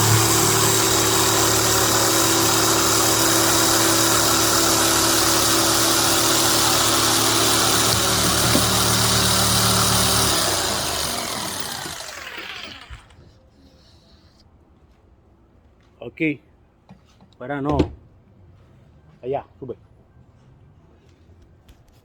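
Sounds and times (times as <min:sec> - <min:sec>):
electric jigsaw motor running: 0:00.0 - 0:13.1.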